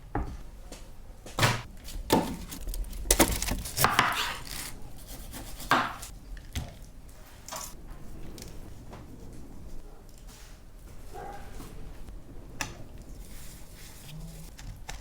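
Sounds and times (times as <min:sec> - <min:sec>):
knife chopping on wooden board: 0:05.5 - 0:06.1.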